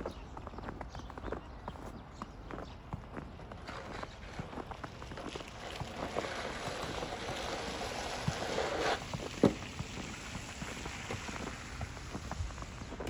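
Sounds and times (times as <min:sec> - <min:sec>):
tyres hissing through slush: 0:03.6 - 0:13.0.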